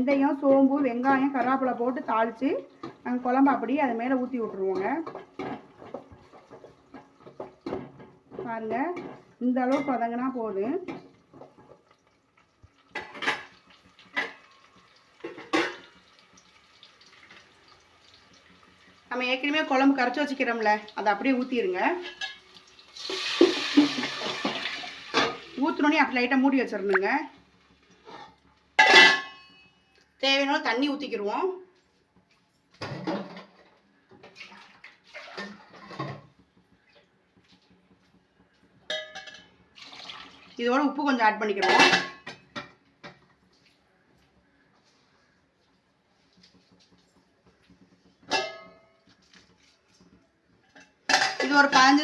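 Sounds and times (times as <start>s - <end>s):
faint frying hiss: 0.0s - 52.0s
water poured into a pan: 11.3s - 28.1s, 34.2s - 42.6s
utensil scraping in a pan: 27.9s - 29.7s.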